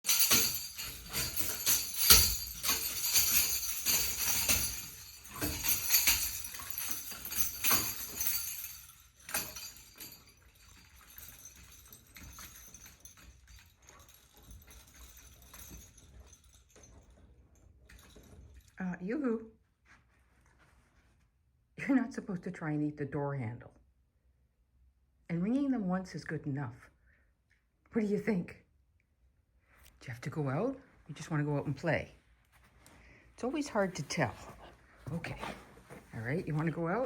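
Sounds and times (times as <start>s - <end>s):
small bells on a strap jangling: 0.0s - 18.9s, 32.8s - 37.0s.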